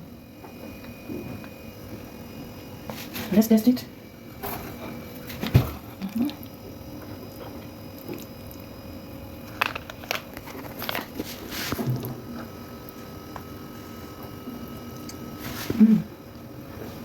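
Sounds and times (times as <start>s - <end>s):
person chewing food: 6.0s - 8.7s.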